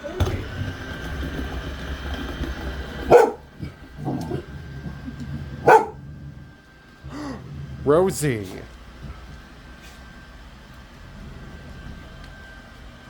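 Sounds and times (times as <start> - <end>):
robot vacuum whirring: 0.0 - 13.0
dog barking: 3.1 - 3.4, 5.6 - 6.0.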